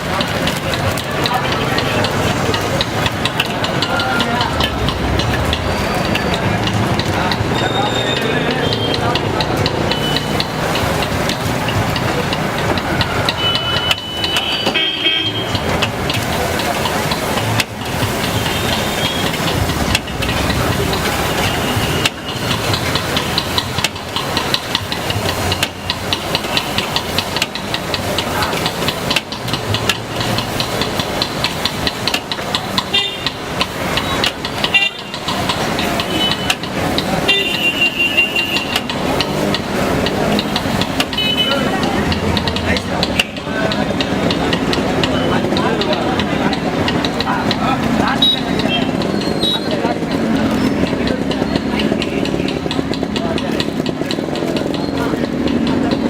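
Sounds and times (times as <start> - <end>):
street traffic: 0.0 - 56.0
vehicle horns honking: 13.0 - 15.8, 18.2 - 19.6, 32.8 - 33.4, 34.0 - 35.3, 36.0 - 39.6, 41.0 - 41.9, 48.1 - 49.7.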